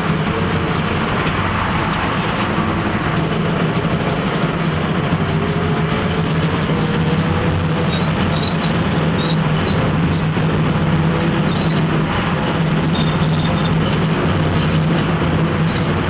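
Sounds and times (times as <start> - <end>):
tank diesel engine running: 0.0 - 16.0
faint whine: 4.7 - 16.0.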